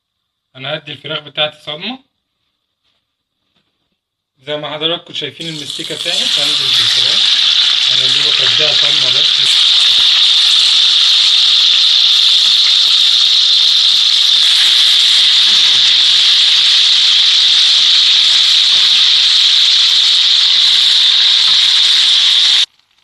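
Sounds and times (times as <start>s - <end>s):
chicken sizzling in hot oil: 5.4s - 23.0s.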